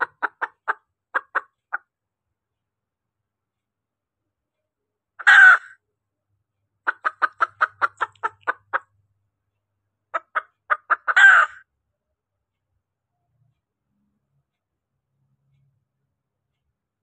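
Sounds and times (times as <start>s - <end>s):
hen squawking: 0.0s - 1.6s, 5.2s - 5.8s, 6.9s - 8.9s, 10.2s - 11.6s
hen clucking: 0.0s - 1.8s, 5.2s - 5.8s, 6.9s - 8.9s, 10.2s - 11.6s.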